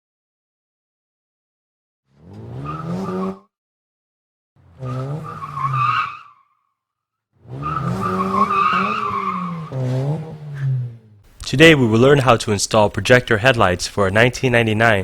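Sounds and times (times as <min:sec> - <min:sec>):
car tyres squealing: 0:02.1 - 0:03.5, 0:04.6 - 0:06.6, 0:07.4 - 0:11.5.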